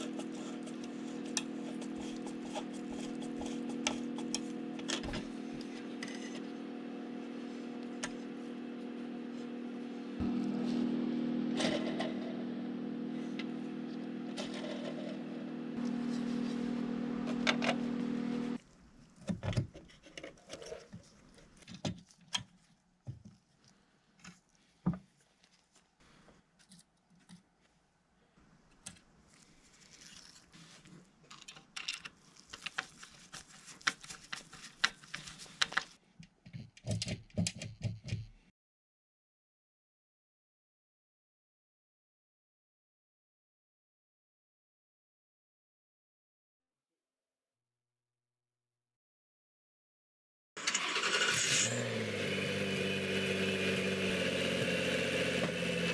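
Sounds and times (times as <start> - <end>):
small motor humming: 0.0 - 18.6, 50.6 - 55.9
small parts clicking and tapping: 31.2 - 32.9.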